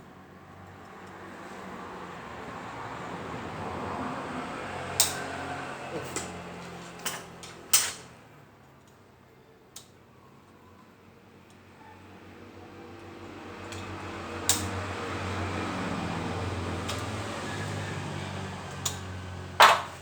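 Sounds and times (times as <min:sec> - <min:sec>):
workshop noise: 0:04.5 - 0:08.2, 0:13.5 - 0:20.0.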